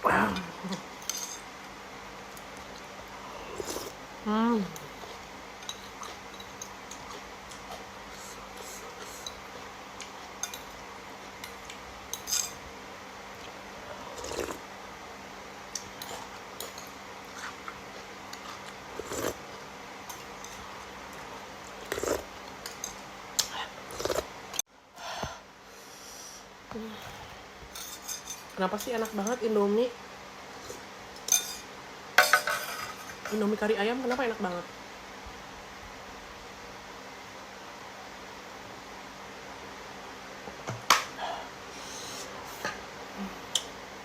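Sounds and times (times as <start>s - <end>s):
eating sounds: 13.4s - 14.6s, 21.7s - 22.8s, 23.4s - 24.3s.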